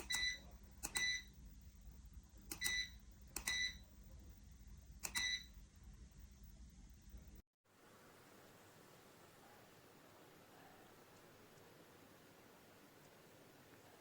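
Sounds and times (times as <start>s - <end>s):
faint low hum: 0.0s - 14.0s
clicks: 2.5s - 3.6s.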